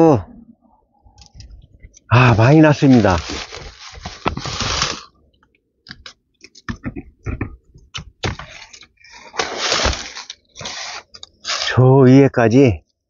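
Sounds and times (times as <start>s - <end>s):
leaves rustling: 2.1s - 5.1s, 8.5s - 11.8s
dry leaves and twigs crackling: 2.2s - 5.1s, 9.3s - 11.6s.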